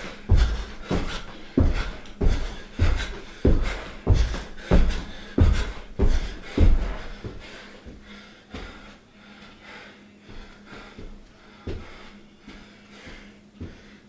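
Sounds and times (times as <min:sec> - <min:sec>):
heavy thumps: 0:00.0 - 0:07.4
heavy snorting breathing: 0:00.0 - 0:14.0.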